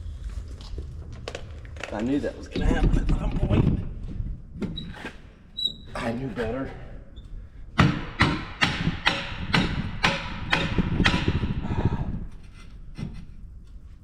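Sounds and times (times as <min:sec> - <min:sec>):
hammer blows: 0:07.8 - 0:11.9.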